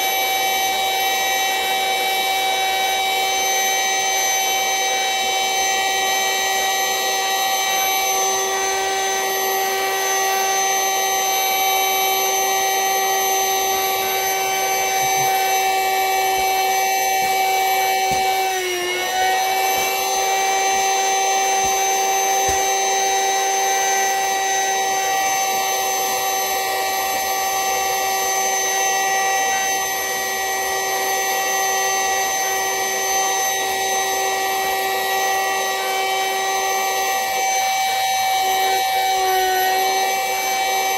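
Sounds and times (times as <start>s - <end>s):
small vacuum cleaner whining: 0.0s - 40.9s.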